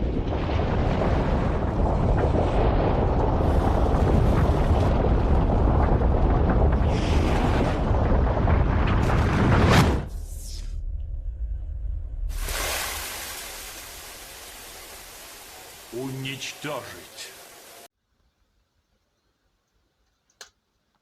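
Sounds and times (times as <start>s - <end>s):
fire roaring in stove: 0.0s - 10.0s
fire crackles: 0.0s - 11.2s, 12.2s - 17.9s.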